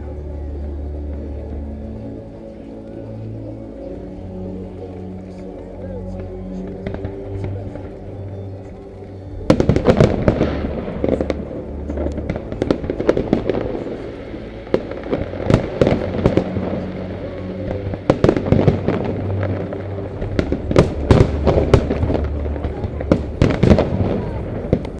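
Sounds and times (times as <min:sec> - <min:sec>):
fireworks bursting: 0:06.6 - 0:24.9.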